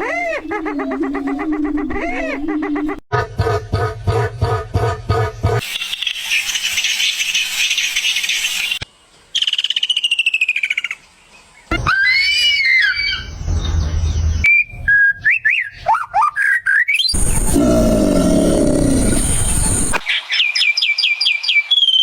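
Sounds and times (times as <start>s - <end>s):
hissing buzz: 17.2s - 20.1s
warbling chirps: 17.2s - 20.1s.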